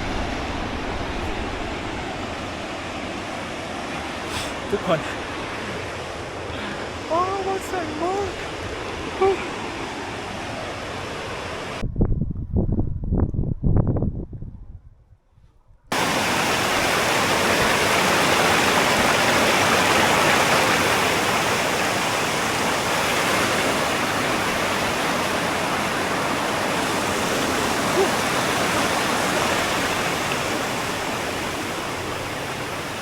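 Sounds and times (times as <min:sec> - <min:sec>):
rushing falling water: 0:00.0 - 0:11.8, 0:15.9 - 0:33.0.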